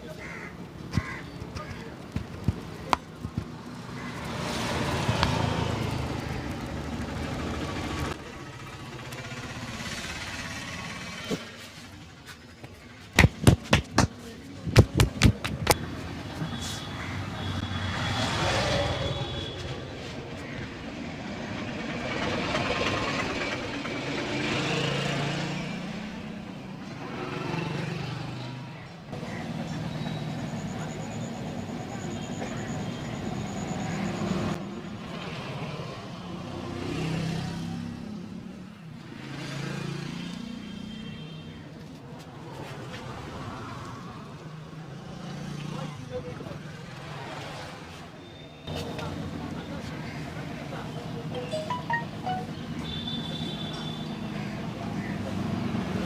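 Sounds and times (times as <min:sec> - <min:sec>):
street traffic passing: 0:00.0 - 0:56.0
loud sharp smacks: 0:13.2 - 0:14.2.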